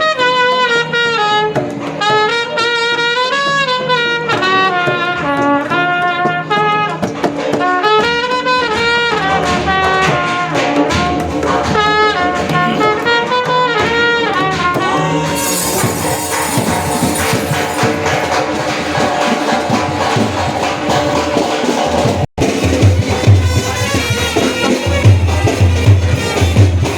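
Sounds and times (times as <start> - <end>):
drumming: 1.4 - 26.9
shehnai melody: 7.8 - 19.1, 23.3 - 26.9.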